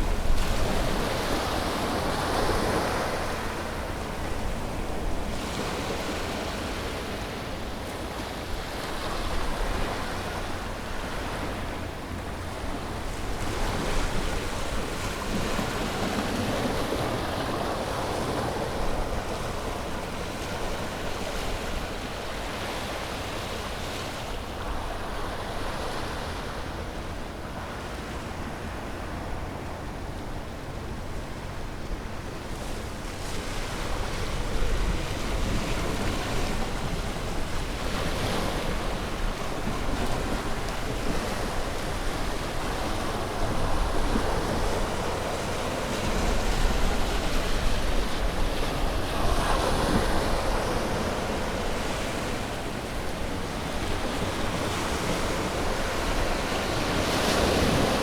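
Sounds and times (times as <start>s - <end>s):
wind: 0.0s - 58.0s
sea waves breaking on beach: 32.6s - 58.0s.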